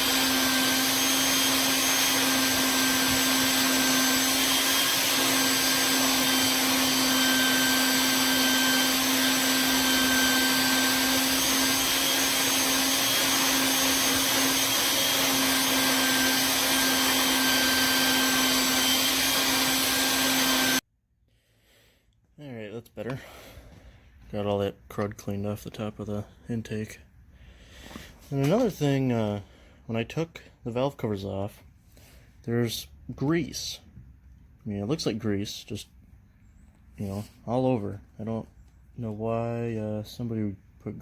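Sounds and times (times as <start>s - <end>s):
vacuum cleaner running: 0.0s - 20.8s.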